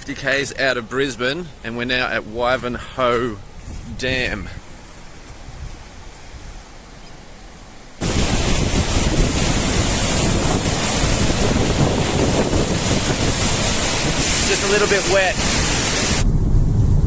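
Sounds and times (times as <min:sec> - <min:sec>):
outdoor background: 0:00.0 - 0:17.0
wind buffeting microphone: 0:01.4 - 0:06.9, 0:08.0 - 0:17.0
waterfall rushing: 0:06.8 - 0:16.2.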